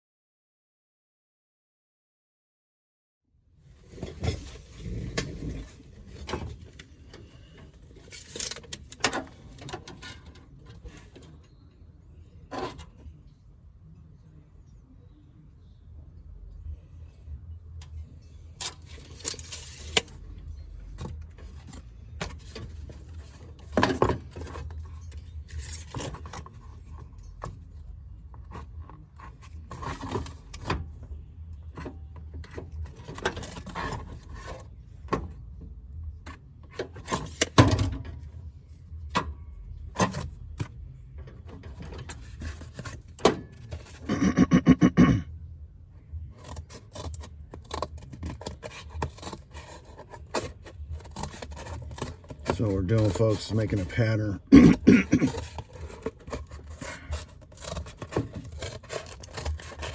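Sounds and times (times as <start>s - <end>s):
rubbing and scraping by hand: 46.4s - 59.9s.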